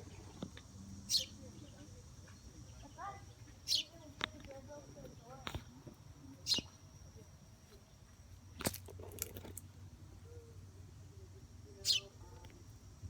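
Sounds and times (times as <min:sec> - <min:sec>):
baby bird chirping: 0:01.0 - 0:05.3, 0:06.3 - 0:06.8, 0:11.7 - 0:12.4.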